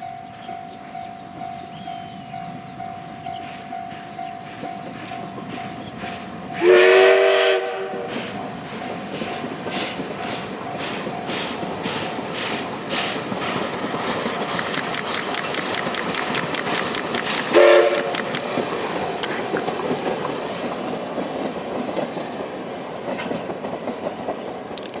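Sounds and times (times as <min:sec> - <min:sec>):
steam locomotive exhaust chuffs: 0:00.0 - 0:25.0
train clatter on rails: 0:00.0 - 0:25.0
steam whistle blasts: 0:06.6 - 0:08.1, 0:17.5 - 0:18.2.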